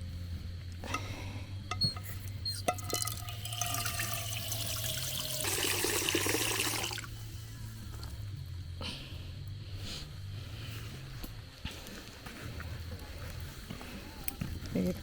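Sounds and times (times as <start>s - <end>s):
water pouring into pot: 2.7s - 7.1s.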